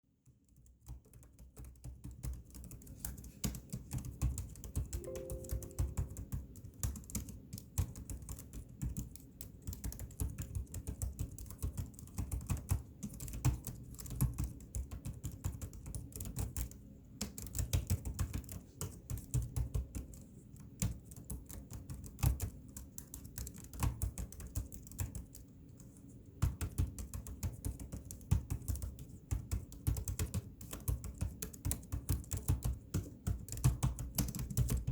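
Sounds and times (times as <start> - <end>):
rapid irregular clicking and tapping: 0.2 - 5.0, 6.6 - 34.9
background music: 5.0 - 6.2.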